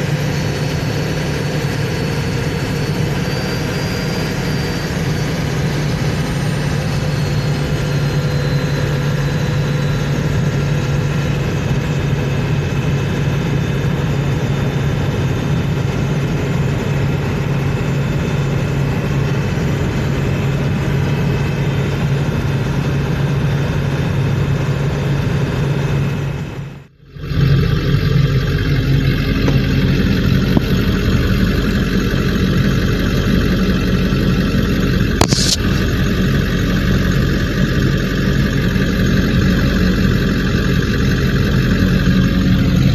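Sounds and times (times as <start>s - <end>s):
diesel engine running: 0.0s - 42.9s
turbo whistle: 35.2s - 36.0s.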